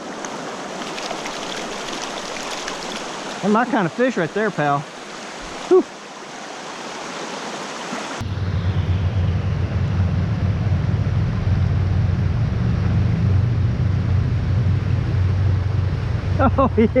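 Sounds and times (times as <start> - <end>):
mountain stream rushing: 0.0 - 8.2.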